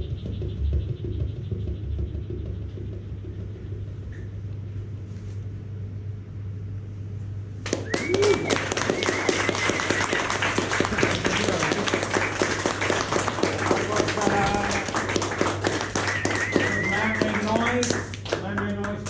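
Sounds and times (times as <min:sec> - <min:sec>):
low steady hum: 0:00.9 - 0:19.0
audience applause: 0:07.6 - 0:19.0
whistle-like cheer: 0:07.7 - 0:18.1.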